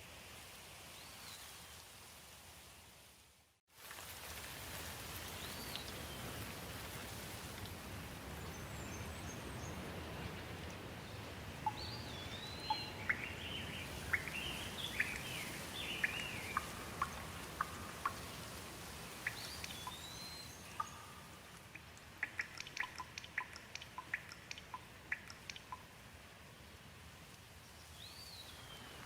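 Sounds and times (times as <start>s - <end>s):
steady background noise: 6.6s - 27.8s
birds chirping: 11.0s - 18.4s, 19.2s - 25.9s.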